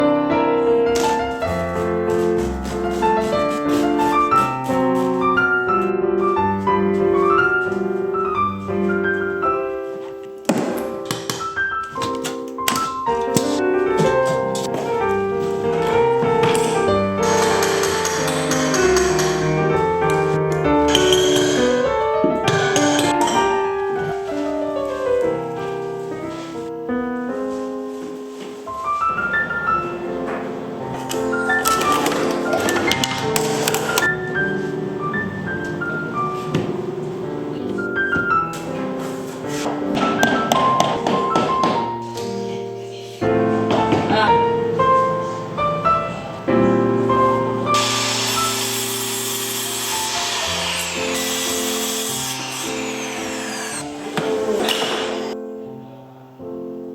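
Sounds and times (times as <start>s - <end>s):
slow piano music: 0.0s - 56.9s.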